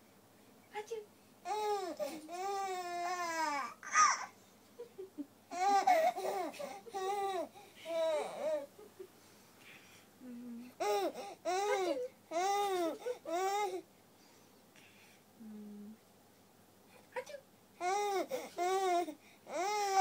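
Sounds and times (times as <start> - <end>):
baby laughing: 10.9 - 13.7.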